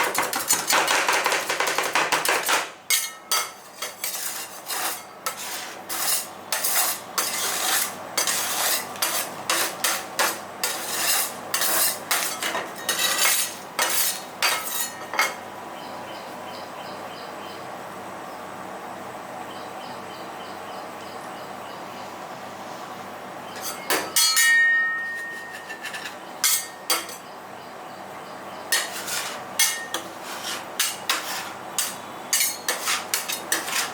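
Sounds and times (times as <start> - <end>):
metal spatulas scraping steel plate: 0.0 - 15.4, 23.6 - 27.2, 28.7 - 33.9.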